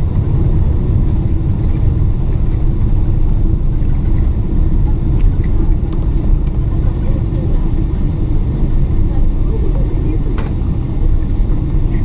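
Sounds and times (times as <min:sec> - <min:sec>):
airplane cabin low rumble: 0:00.0 - 0:12.0.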